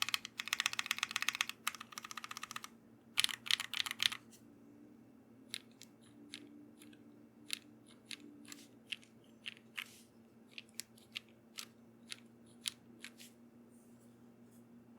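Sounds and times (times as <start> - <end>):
mechanical keyboard keystrokes: 0.0 - 4.2.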